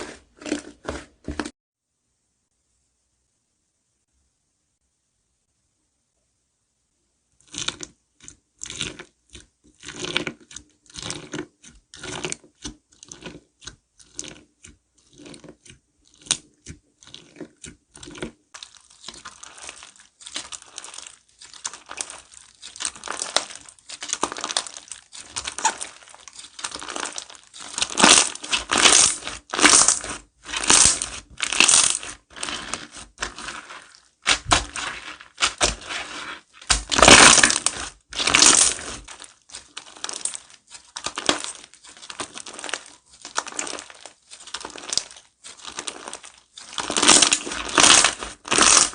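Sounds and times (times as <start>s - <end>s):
slime squeezed crackling and popping: 15.1s - 48.9s.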